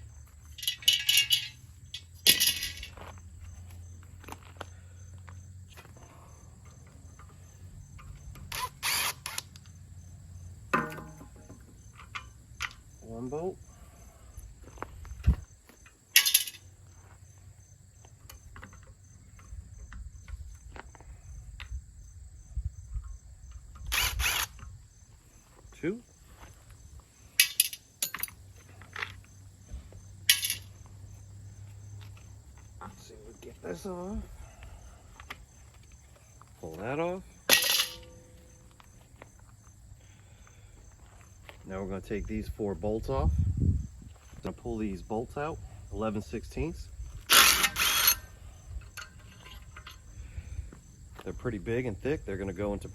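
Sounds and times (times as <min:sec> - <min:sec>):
metal tools clinking: 0:00.4 - 0:03.2, 0:15.8 - 0:16.8, 0:27.3 - 0:29.3, 0:30.2 - 0:30.9, 0:36.6 - 0:38.5, 0:45.3 - 0:50.1
loud short rasping burst: 0:08.5 - 0:09.5, 0:23.9 - 0:24.6, 0:47.3 - 0:48.3.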